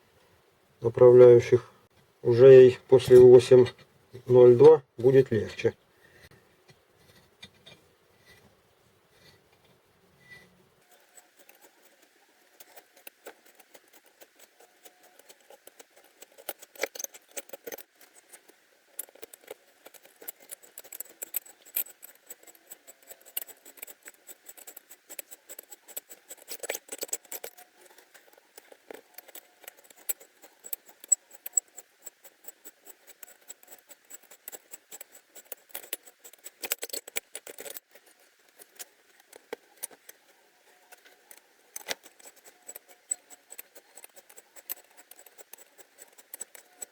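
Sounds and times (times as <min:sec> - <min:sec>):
reamer clicking and scraping metal: 0:10.3 - 0:46.9.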